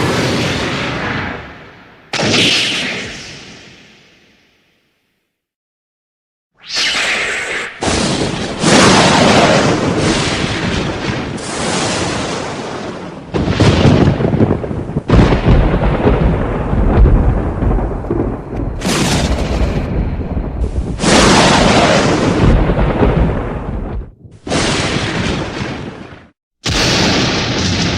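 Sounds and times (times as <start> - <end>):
cracking thunderclaps: 7.8 - 27.9
deep thunder rumbling: 8.0 - 26.1.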